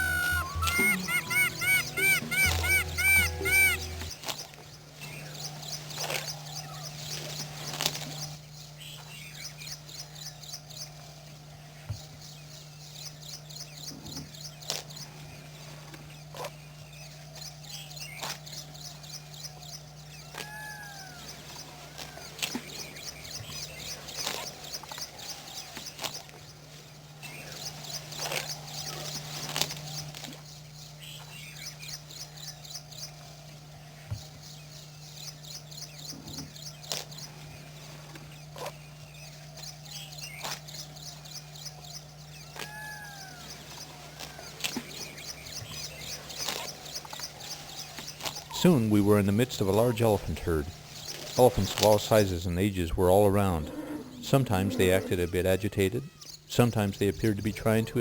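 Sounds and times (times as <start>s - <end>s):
high-pitched rattling bird trill: 0.0s - 4.1s
whistled bird notes: 0.0s - 4.1s
bird chips: 0.0s - 4.5s, 39.7s - 50.1s.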